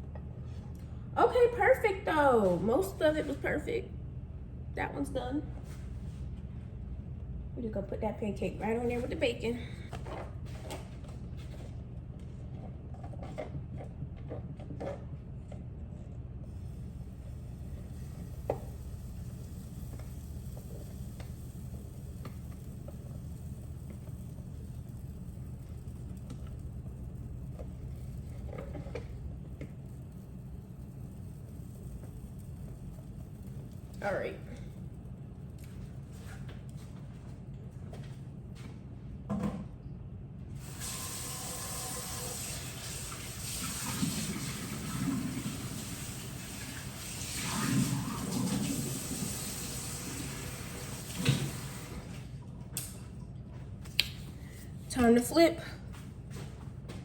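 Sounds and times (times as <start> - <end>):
steady low hum: 0.0 - 40.8, 51.8 - 57.0
batter sizzling in hot pan: 16.5 - 36.2, 40.6 - 52.0.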